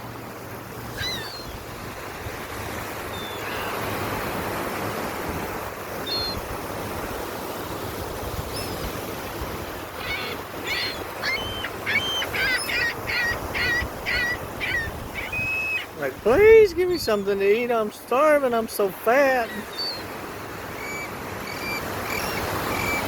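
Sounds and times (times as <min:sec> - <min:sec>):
surf: 0:00.0 - 0:23.0
gulls crying: 0:09.7 - 0:23.0.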